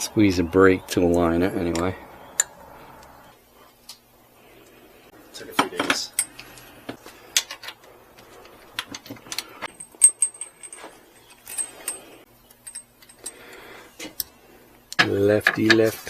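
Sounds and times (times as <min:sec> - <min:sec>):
small metal parts clinking: 0:07.4 - 0:13.6.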